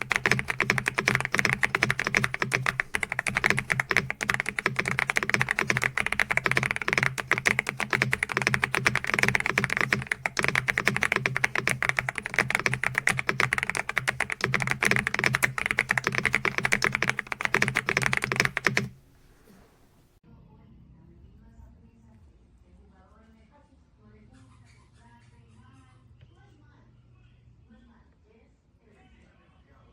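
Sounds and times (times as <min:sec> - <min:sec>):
mechanical keyboard typing: 0:00.0 - 0:19.0.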